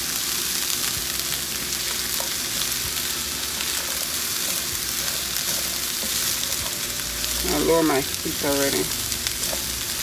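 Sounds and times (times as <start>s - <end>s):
vegetables sizzling in oil: 0.0s - 10.0s.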